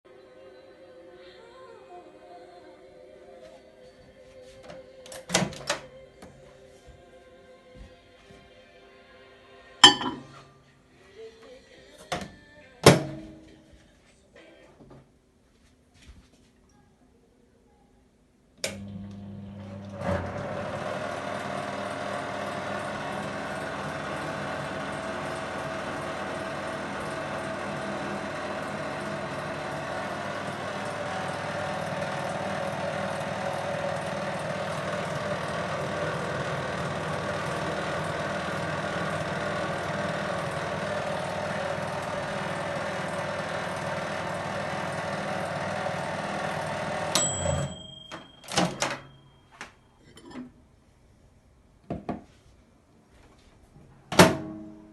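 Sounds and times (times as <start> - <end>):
microwave oven humming: 18.6 - 49.6, 53.9 - 54.9.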